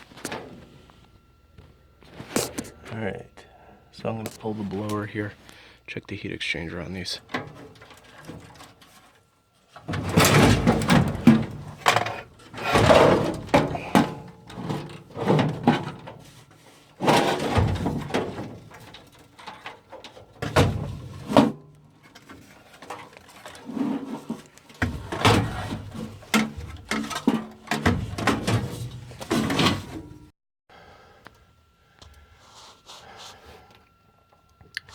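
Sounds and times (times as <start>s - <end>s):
metal clanks and scrapes: 7.2s - 9.2s, 9.8s - 30.3s.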